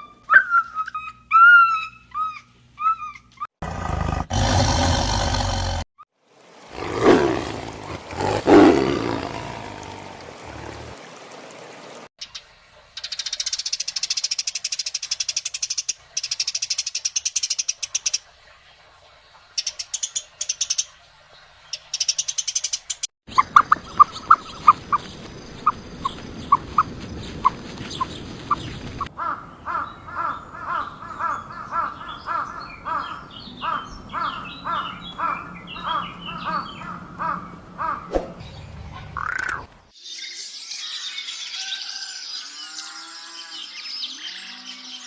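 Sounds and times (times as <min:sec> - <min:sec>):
evenly repeating animal calls: 0:06.7 - 0:11.0.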